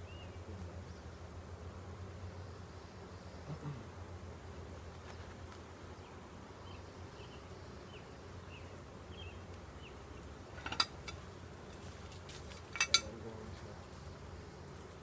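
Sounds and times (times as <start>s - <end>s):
honeybees humming: 0.0s - 15.0s.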